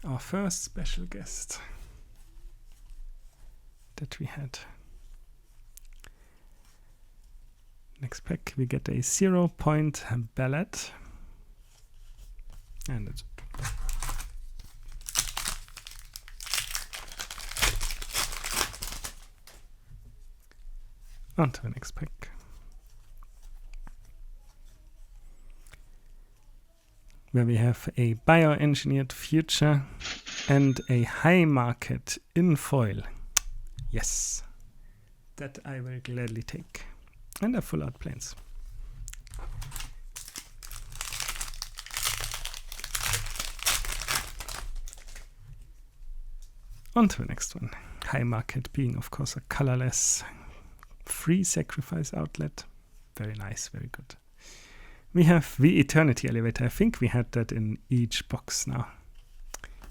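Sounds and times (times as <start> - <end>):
foil wrapper crinkling and tearing: 13.6 - 19.7, 39.2 - 45.3.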